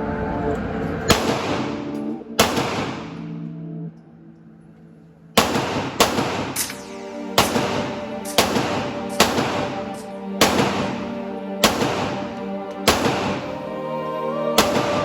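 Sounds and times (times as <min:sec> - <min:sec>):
background music: 0:00.0 - 0:15.0
gunshots with ringing tail: 0:01.1 - 0:03.4, 0:05.4 - 0:13.7, 0:14.6 - 0:15.0.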